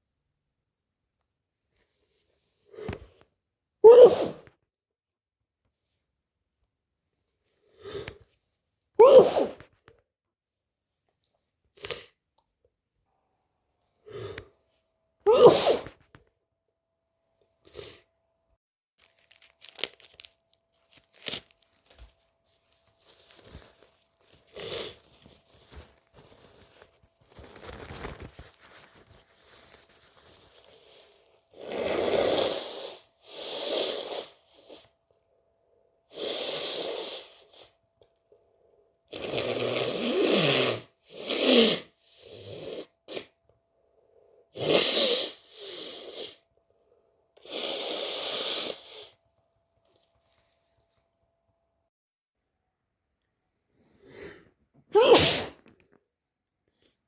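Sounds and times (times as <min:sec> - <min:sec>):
nose blowing: 0:03.8 - 0:04.5, 0:09.0 - 0:09.7, 0:15.3 - 0:16.0, 0:24.5 - 0:25.1, 0:31.6 - 0:34.8, 0:36.1 - 0:37.7, 0:39.1 - 0:43.3, 0:44.6 - 0:46.4, 0:47.4 - 0:49.2, 0:55.0 - 0:55.6
person sneezing: 0:03.8 - 0:04.5, 0:09.0 - 0:09.7, 0:15.3 - 0:16.0, 0:54.0 - 0:55.7
person sniffling: 0:09.0 - 0:09.6, 0:53.8 - 0:55.6
rustling: 0:19.0 - 0:31.1.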